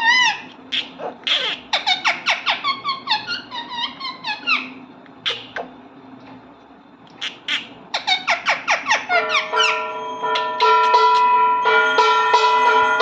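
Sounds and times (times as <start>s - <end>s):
parrot squeaky chirps: 0.0s - 5.7s, 7.2s - 10.9s.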